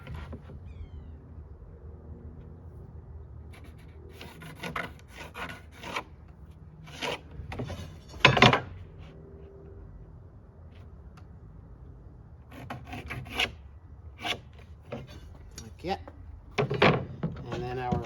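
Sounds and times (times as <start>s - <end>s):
pencil scratching on plywood: 3.5s - 6.2s, 6.8s - 8.5s, 12.5s - 13.6s, 14.2s - 15.5s.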